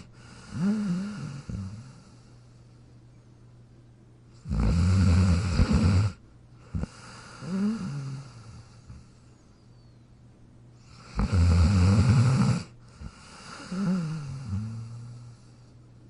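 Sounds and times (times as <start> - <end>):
dog snoring: 0.0 - 2.4, 4.4 - 9.2, 10.8 - 15.7
whistling breath: 9.3 - 10.2.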